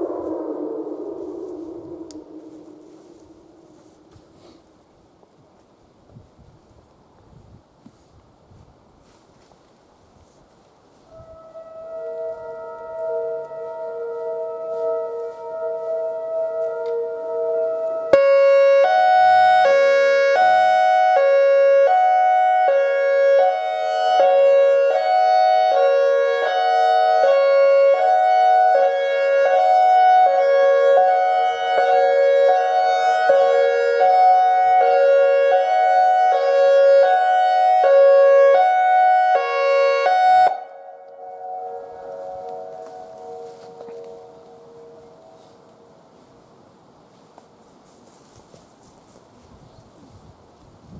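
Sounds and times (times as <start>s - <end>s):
hi-lo warning siren: 0.0s - 4.4s, 10.9s - 46.3s
faint steady tone: 38.7s - 48.2s.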